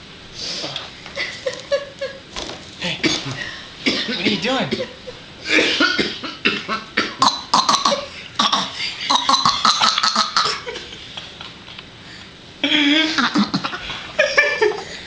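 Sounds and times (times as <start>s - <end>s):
child fake coughing: 3.9s - 10.6s.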